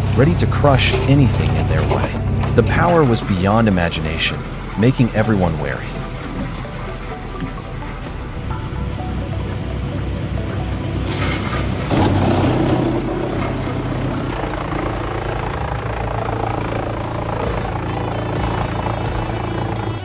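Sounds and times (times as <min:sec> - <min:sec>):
faint background music: 0:00.0 - 0:15.6
heavy machinery engine drone: 0:00.0 - 0:20.0.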